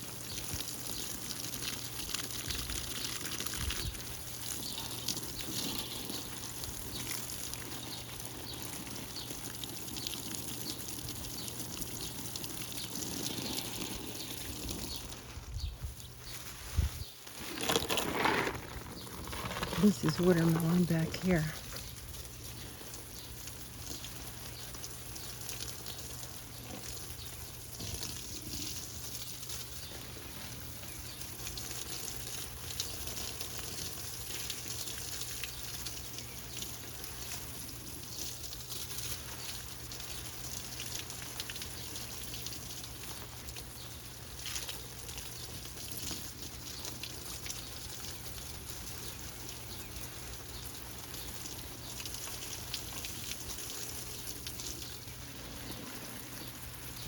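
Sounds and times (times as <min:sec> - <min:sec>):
falling water hiss and patter: 0:00.0 - 0:57.0.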